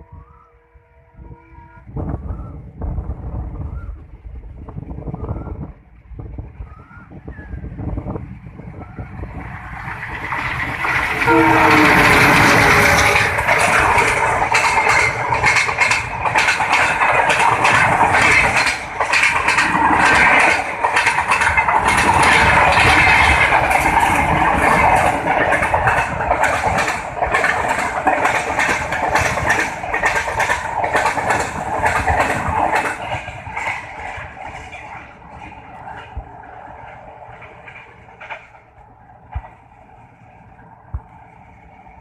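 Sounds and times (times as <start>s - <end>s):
train rumble: 0.0s - 42.0s
train wheels clattering over joints: 9.8s - 39.7s.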